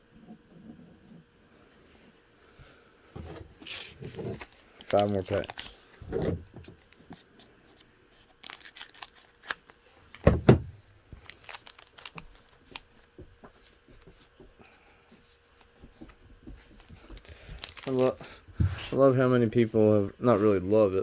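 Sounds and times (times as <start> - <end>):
wrapper tearing and crinkling: 3.6 - 5.9, 8.4 - 10.3, 11.1 - 12.9, 17.2 - 18.2
cards rustling and clicking: 3.6 - 6.0, 6.6 - 10.3, 11.1 - 14.4, 15.5 - 18.5.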